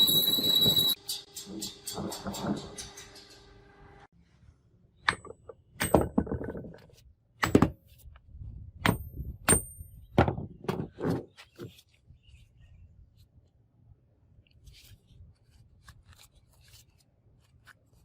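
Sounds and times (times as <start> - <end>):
metal knocks and clanks: 1.0 - 3.9.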